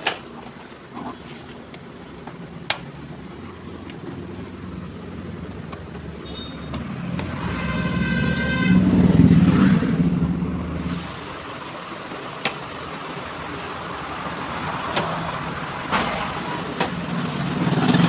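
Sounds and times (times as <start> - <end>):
vehicle engine revving: 2.9 - 11.6, 14.2 - 18.0.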